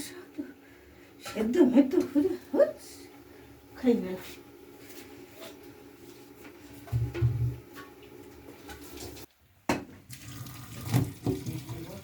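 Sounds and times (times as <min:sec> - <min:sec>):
soft kitchen clicks and clatter: 0:01.2 - 0:02.5.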